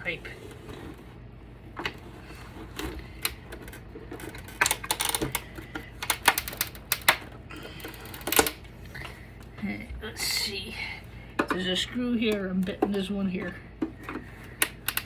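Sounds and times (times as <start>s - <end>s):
plastic and metal parts clicking: 2.6s - 8.7s, 12.3s - 15.0s.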